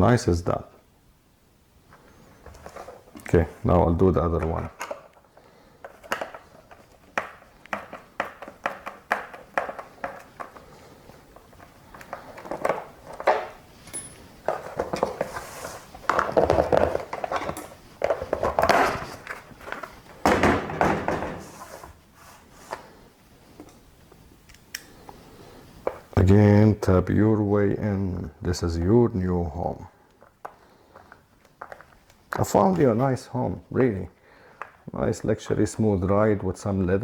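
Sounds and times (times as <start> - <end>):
clicks and knocks of plastic parts: 4.3 - 10.8.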